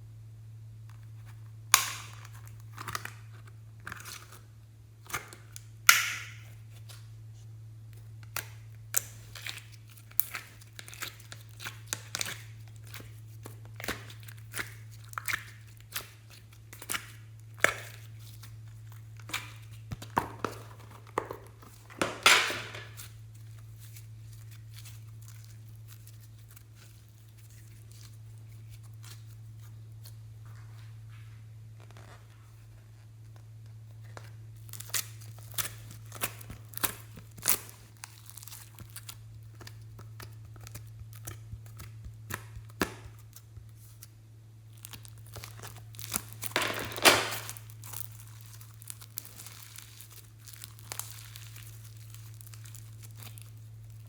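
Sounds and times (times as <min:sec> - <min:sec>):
low electrical hum: 0:00.0 - 0:54.0
slime popping and crackling: 0:05.1 - 0:06.6, 0:34.6 - 0:44.1, 0:44.7 - 0:54.0.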